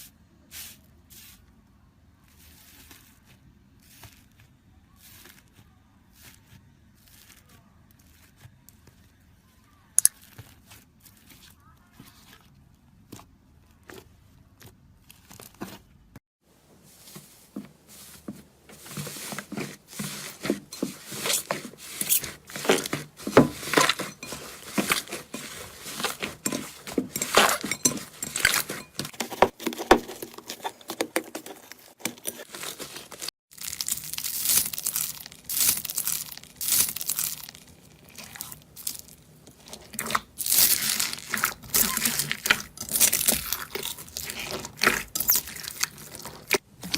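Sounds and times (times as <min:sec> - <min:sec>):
crunchy slime crackling: 0:32.5 - 0:46.9.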